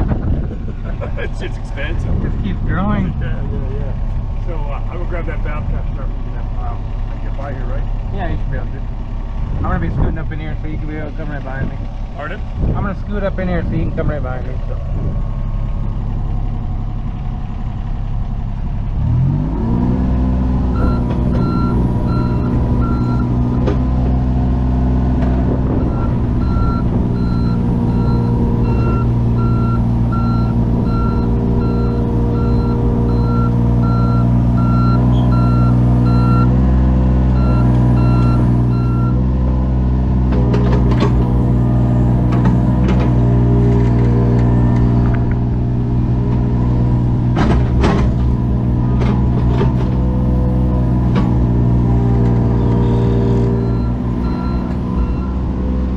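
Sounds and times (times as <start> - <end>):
loader engine revving: 0.0 - 55.9
backup alarm beeping: 20.8 - 23.6, 25.8 - 36.5, 37.4 - 39.2, 53.2 - 55.5.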